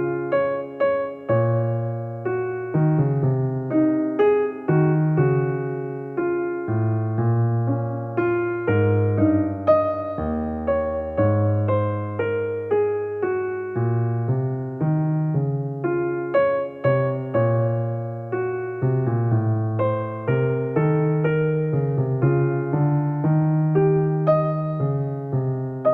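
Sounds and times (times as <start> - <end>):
gentle piano music: 0.0 - 25.9.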